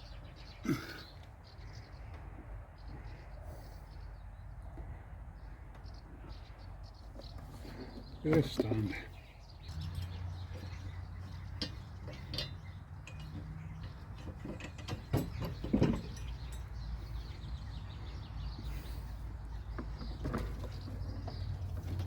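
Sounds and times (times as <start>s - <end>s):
tools and metal parts clinking: 9.7s - 17.5s.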